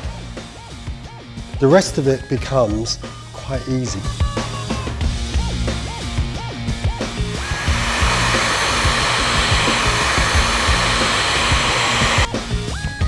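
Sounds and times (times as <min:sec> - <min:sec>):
hair dryer blowing: 0:07.1 - 0:12.3.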